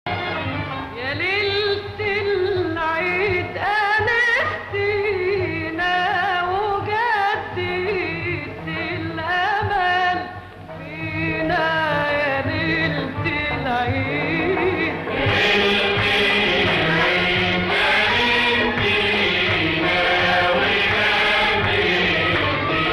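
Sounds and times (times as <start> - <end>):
background music with ornamented melody: 8.8 - 22.9.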